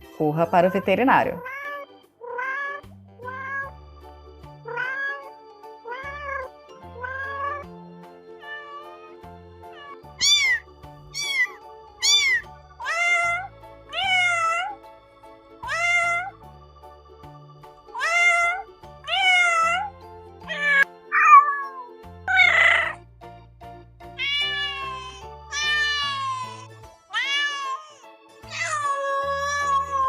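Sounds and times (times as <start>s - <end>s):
background music: 0.0s - 30.0s
cats meowing: 1.4s - 3.8s, 4.6s - 14.8s, 15.6s - 16.4s, 17.9s - 23.0s, 24.2s - 30.0s
high-pitched kitten meows: 1.4s - 3.8s, 4.7s - 7.7s, 8.4s - 14.8s, 15.6s - 16.4s, 17.9s - 23.0s, 24.2s - 30.0s.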